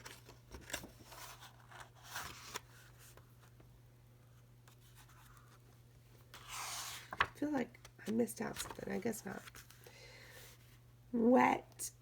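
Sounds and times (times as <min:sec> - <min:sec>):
book pages rustling: 0:00.0 - 0:03.7, 0:04.7 - 0:05.7, 0:06.3 - 0:09.8
faint electrical hum: 0:00.0 - 0:12.0.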